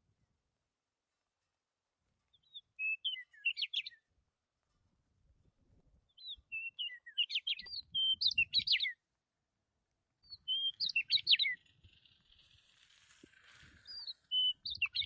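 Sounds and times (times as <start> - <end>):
songbird singing: 2.2 - 4.2, 6.0 - 9.1, 10.1 - 15.0.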